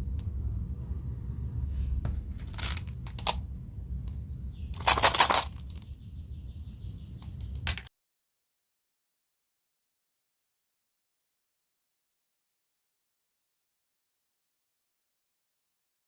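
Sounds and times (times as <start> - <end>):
marbles rattling on plastic track: 2.4 - 3.4, 4.8 - 5.8, 7.3 - 7.9.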